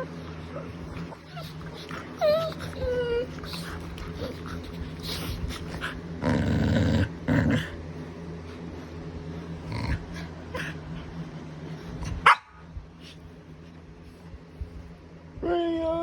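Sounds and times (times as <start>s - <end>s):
dogs growling: 0.0s - 12.2s.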